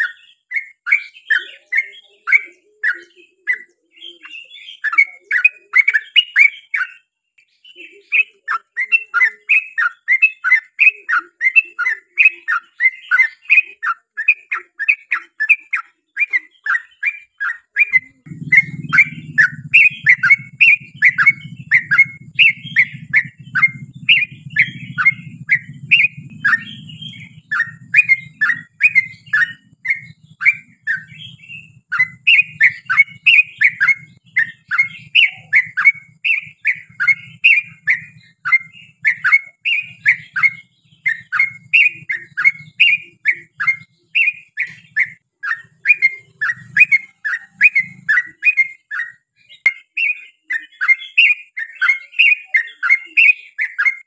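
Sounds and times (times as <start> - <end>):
bird singing bubbly chirps: 0.0 - 54.0
low hum: 18.2 - 39.0.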